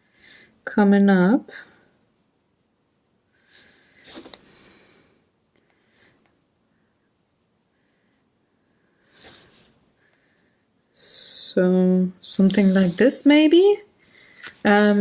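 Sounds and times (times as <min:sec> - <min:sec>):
marker scratching on paper: 0:12.4 - 0:13.4.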